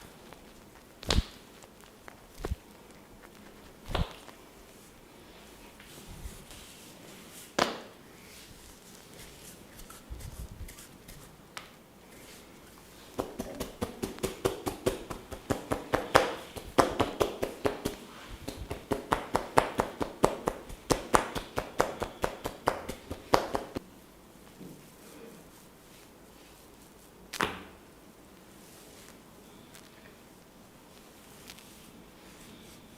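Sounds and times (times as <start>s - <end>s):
sharp crack: 1.0s - 1.4s
hands slapping in massage: 1.0s - 1.5s, 3.9s - 4.3s, 7.6s - 7.9s, 13.1s - 23.8s.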